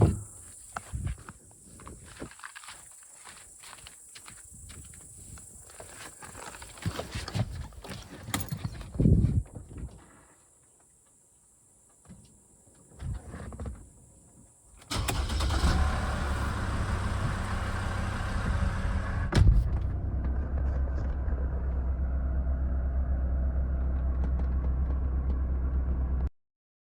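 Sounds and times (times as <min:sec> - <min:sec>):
car engine starting and running: 0:00.0 - 0:00.4, 0:14.8 - 0:26.3.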